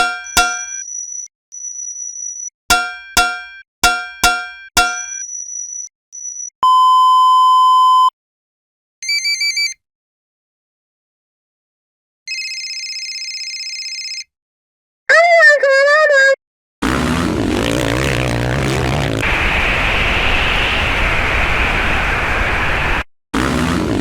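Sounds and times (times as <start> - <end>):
sharp clanging strikes: 0.0 - 0.8, 2.7 - 5.2
steady electronic beep: 0.0 - 2.5, 4.8 - 8.1.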